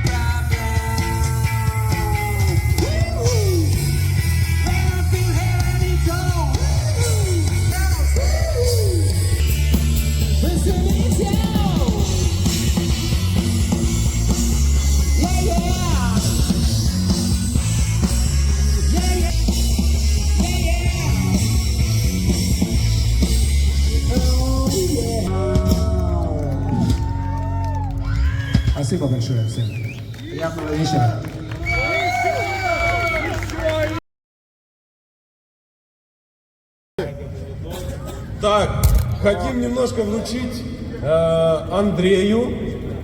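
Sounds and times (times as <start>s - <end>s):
loud rock music with singer: 0.0s - 28.9s.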